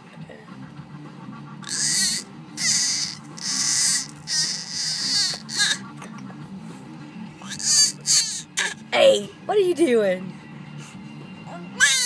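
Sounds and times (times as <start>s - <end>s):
baby squealing: 1.6s - 5.8s, 7.4s - 8.8s, 11.6s - 12.0s.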